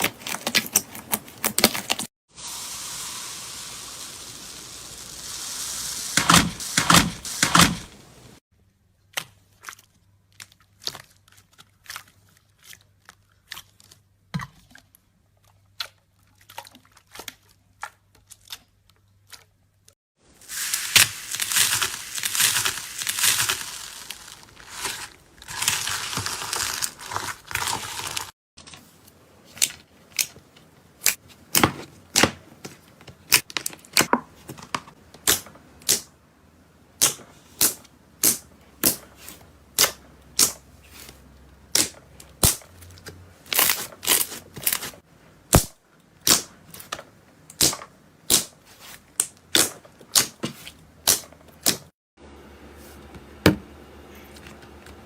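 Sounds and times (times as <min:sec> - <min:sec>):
slime crackling: 0:20.4 - 0:28.3
slime popping: 0:20.5 - 0:26.4.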